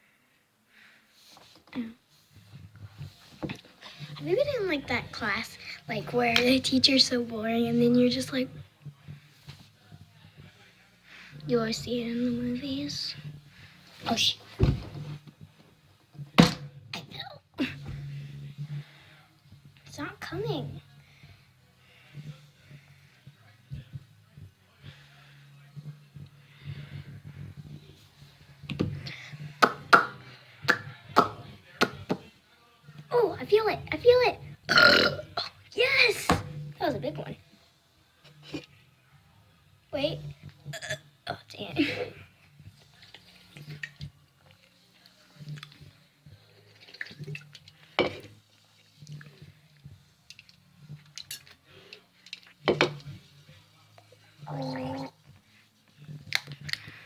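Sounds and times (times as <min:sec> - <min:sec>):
short burp: 0:34.7 - 0:35.5, 0:40.7 - 0:41.0.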